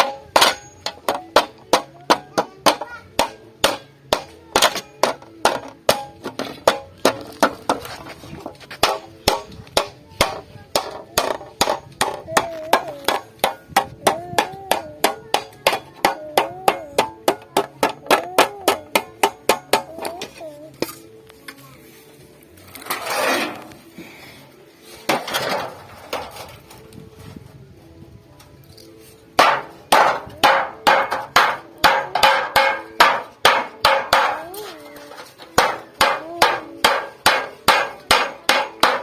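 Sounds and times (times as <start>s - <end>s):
hammer striking sheet metal: 0.0s - 7.9s, 8.8s - 20.3s, 29.4s - 34.7s, 35.5s - 39.0s.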